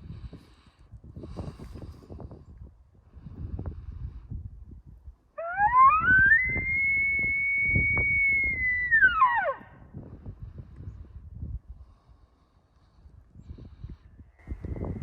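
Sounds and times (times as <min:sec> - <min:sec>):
elk bugle whistle: 0:05.4 - 0:09.7.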